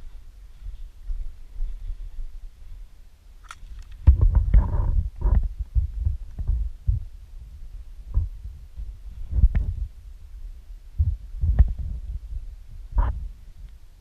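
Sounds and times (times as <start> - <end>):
low thumps and knocks: 4.0 - 7.1, 8.1 - 9.9, 11.0 - 12.3.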